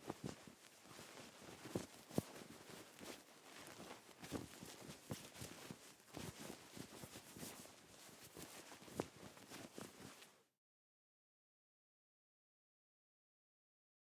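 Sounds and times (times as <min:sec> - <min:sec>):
fabric rustling: 0:00.0 - 0:10.4.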